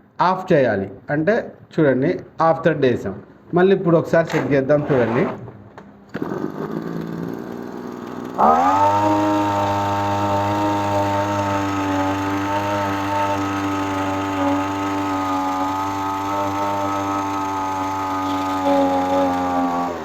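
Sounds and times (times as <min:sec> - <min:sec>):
small two-stroke engine revving: 0:06.1 - 0:20.0.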